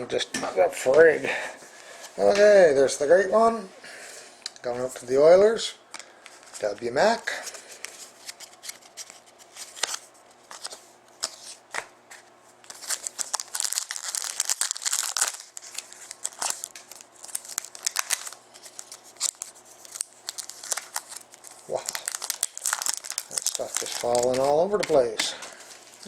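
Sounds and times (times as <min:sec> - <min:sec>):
cards clicking and rustling: 0:06.0 - 0:26.0
wrapper tearing and crinkling: 0:12.7 - 0:26.0.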